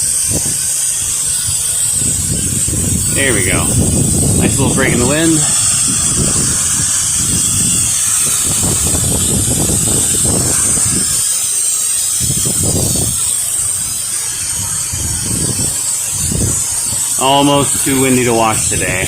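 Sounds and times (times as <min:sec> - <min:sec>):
pressure washer spray hissing: 0:00.0 - 0:19.0
wind buffeting microphone: 0:00.0 - 0:19.0.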